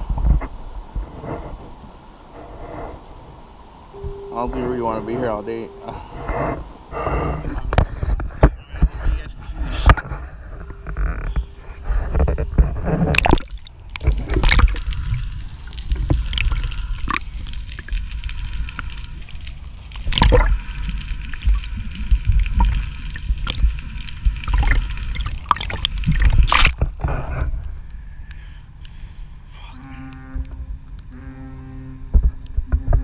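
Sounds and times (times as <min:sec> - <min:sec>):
low rumble: 0:00.0 - 0:28.2
water sloshing against hull: 0:10.6 - 0:27.1.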